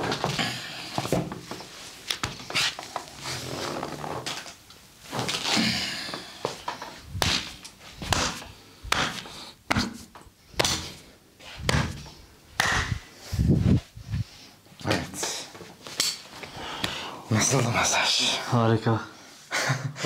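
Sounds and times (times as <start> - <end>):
hands slapping body in massage: 7.1 - 11.0, 11.6 - 13.1.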